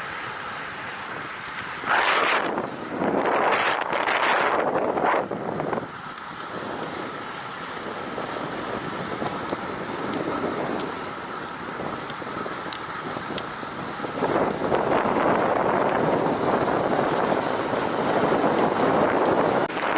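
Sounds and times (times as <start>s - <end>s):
wind rushing over microphone: 1.8s - 7.2s, 11.6s - 19.9s.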